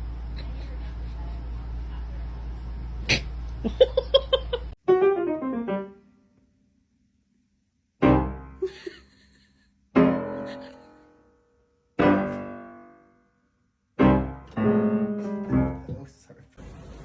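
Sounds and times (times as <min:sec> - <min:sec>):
piano chords ringing: 0:04.8 - 0:06.2, 0:08.0 - 0:08.7, 0:12.0 - 0:13.2, 0:14.0 - 0:16.2.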